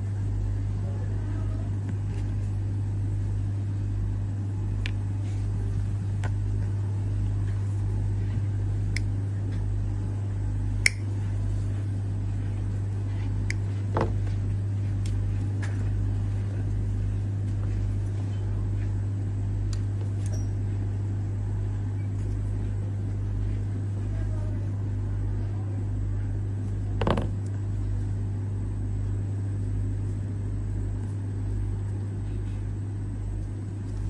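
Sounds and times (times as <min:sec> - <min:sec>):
steady low hum: 0:00.0 - 0:34.0
sharp click: 0:10.8 - 0:11.1.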